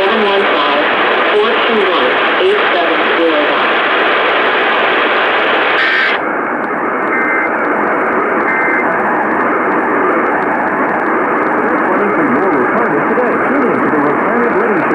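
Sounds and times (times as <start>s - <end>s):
radio static hiss: 0.0s - 14.9s
faint two-tone data bursts: 5.2s - 6.3s, 7.0s - 10.2s.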